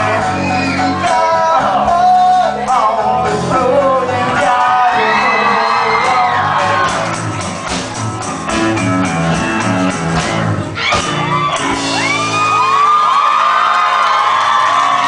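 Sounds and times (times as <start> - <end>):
live rock band playing: 0.0 - 15.0
audience whooping: 4.5 - 8.8, 10.7 - 15.0.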